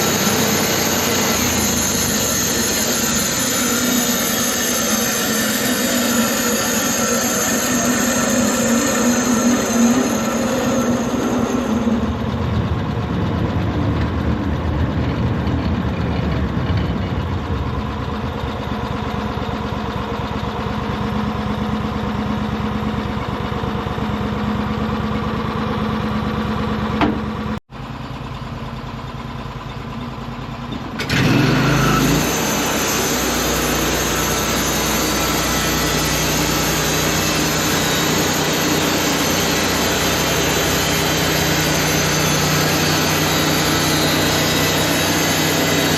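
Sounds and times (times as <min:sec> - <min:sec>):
saw blade cutting log: 0:00.0 - 0:12.3, 0:31.0 - 0:45.9
sawmill engine running: 0:00.0 - 0:45.9.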